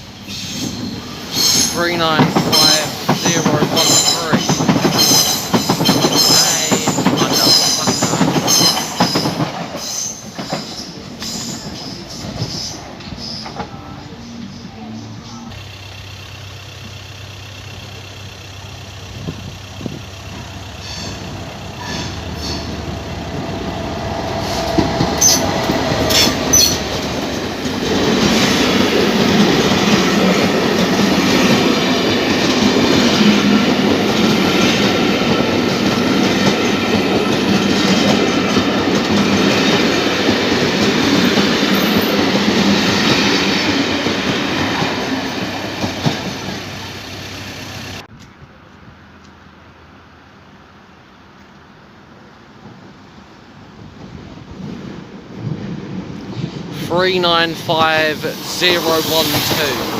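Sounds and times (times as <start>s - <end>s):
train passing: 0.0s - 59.9s
wheels clacking over rails: 0.4s - 13.8s, 17.6s - 48.1s.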